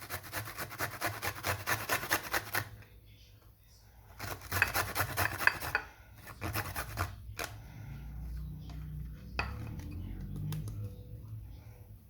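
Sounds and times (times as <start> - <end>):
grater rasping: 0.0 - 2.7, 4.2 - 7.6.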